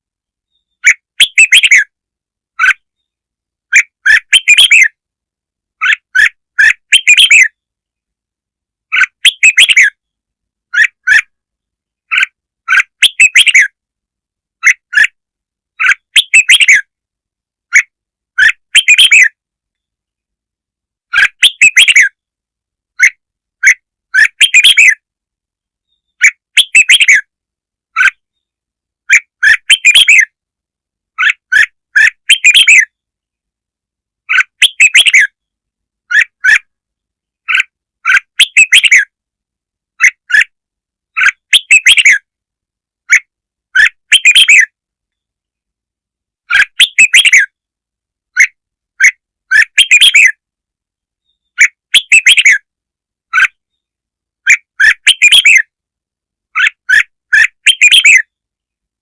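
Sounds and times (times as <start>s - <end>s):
bulbul song: 54.5s - 55.7s.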